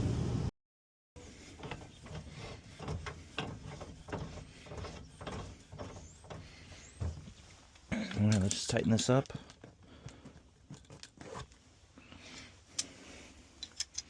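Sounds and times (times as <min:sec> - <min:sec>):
hand tools clicking and knocking: 0:01.3 - 0:11.6.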